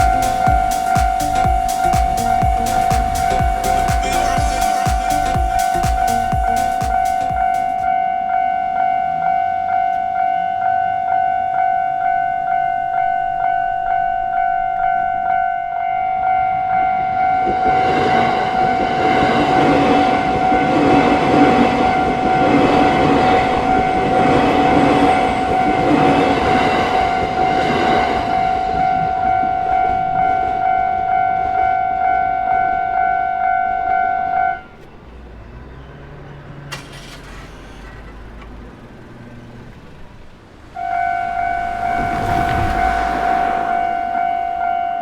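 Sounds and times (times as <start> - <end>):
low hum: 0.0 - 7.9, 39.9 - 45.0
train rumbling: 0.0 - 8.0, 16.6 - 34.0, 38.2 - 45.0
level crossing bell ringing: 0.0 - 8.1.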